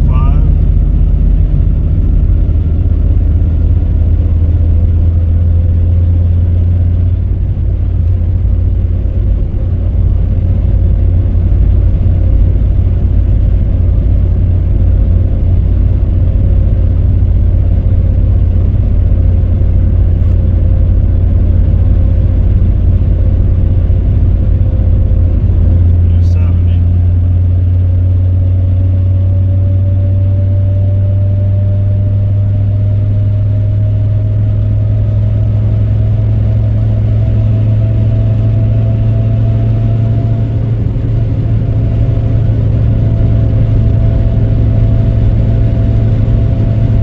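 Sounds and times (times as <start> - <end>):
faint steady whine: 0.0 - 30.6
road and engine rumble: 0.0 - 47.0.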